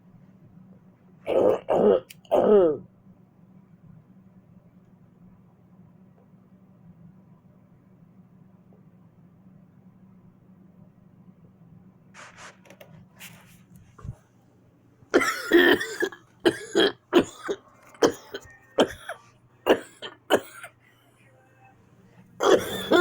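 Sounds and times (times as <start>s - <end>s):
person coughing: 1.3s - 2.9s, 15.2s - 20.8s, 22.4s - 23.0s.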